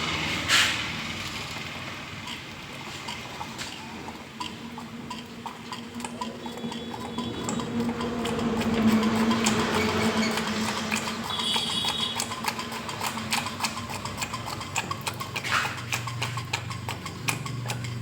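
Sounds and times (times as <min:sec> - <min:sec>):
rhythmic ticking: 0:02.2 - 0:18.0
motorcycle engine running: 0:06.4 - 0:18.0.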